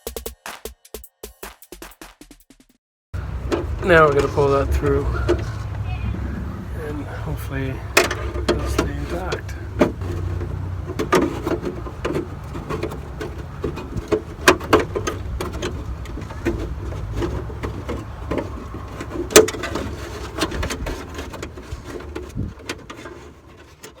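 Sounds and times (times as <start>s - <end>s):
low rumble: 3.2s - 19.0s
wiring harness clicks and rubbing: 3.2s - 24.0s.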